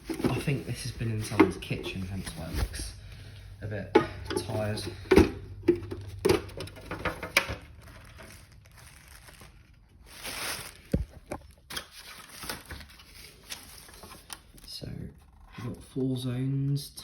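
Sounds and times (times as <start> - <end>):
rustling: 0.0 - 3.2, 7.6 - 14.5
clicks and knocks of handling: 3.9 - 7.7.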